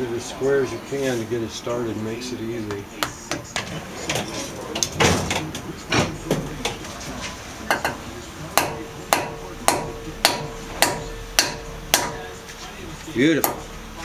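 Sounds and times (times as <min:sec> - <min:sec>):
hammer striking metal: 0:02.7 - 0:07.0, 0:07.6 - 0:12.7, 0:13.3 - 0:13.8.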